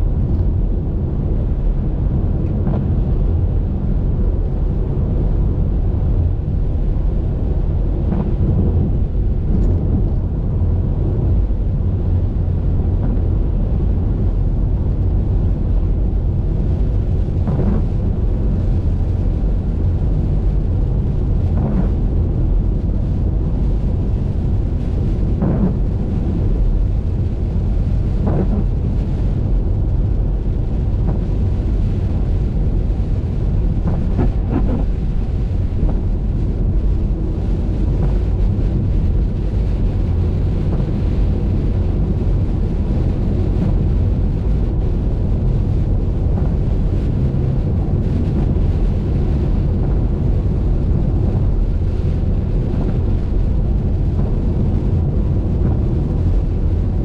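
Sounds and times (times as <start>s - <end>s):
wind buffeting microphone: 0.0s - 57.0s
tyre and road noise: 16.6s - 57.0s.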